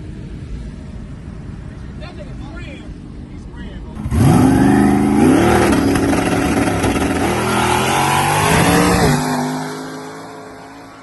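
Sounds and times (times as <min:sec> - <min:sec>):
car engine revving through gears: 0:04.0 - 0:10.5.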